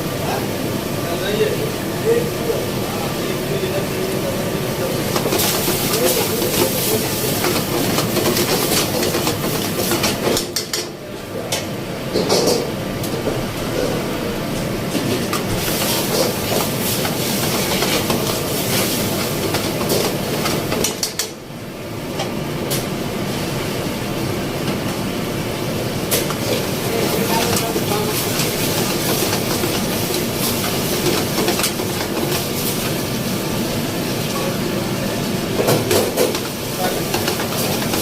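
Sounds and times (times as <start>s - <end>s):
food sizzling in a pan: 15.6s - 20.8s, 26.2s - 34.3s.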